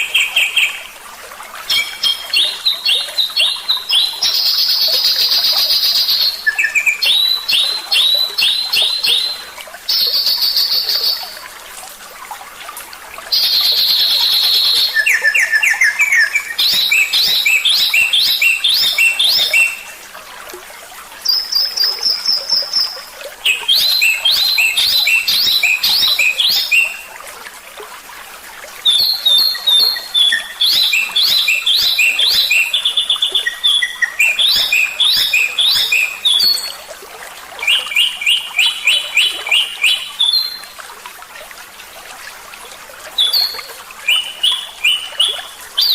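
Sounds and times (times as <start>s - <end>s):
songbird trills and chirps: 1.7s - 11.4s, 13.3s - 19.9s, 21.2s - 27.0s, 28.9s - 36.8s, 37.6s - 40.7s, 43.2s - 45.9s.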